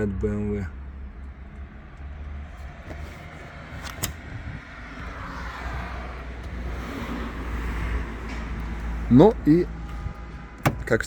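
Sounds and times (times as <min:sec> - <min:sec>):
steady low rumble: 0:03.5 - 0:11.0
latch clicking: 0:09.9 - 0:11.0.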